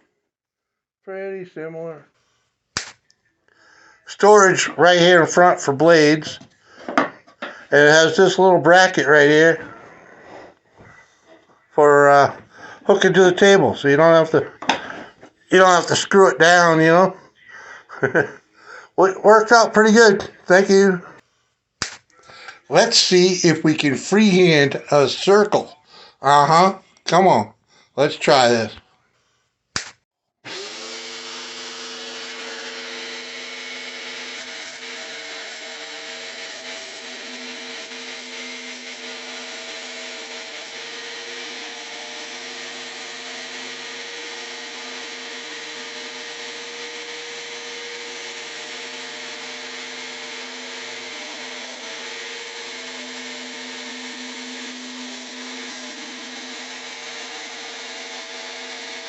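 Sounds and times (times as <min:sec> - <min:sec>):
jigsaw whining cutting wood: 0:04.2 - 0:11.2, 0:11.9 - 0:21.2, 0:30.4 - 0:59.0.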